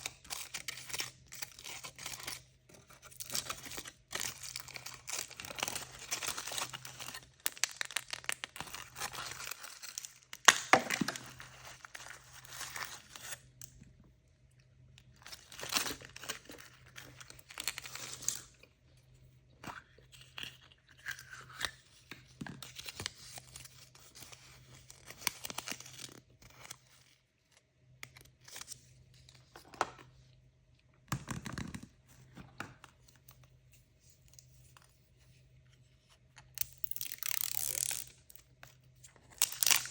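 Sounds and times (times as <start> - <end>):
packaging being torn and crinkled: 0.0 - 13.8, 15.1 - 18.6, 22.6 - 26.8, 36.5 - 39.9.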